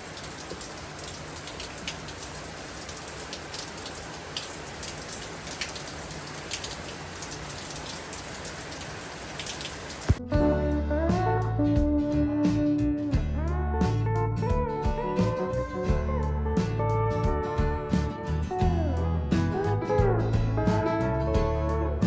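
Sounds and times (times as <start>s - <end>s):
sharp raindrop ticks: 0.0s - 10.2s
steady rain: 0.0s - 10.2s
guitar music: 10.2s - 22.0s.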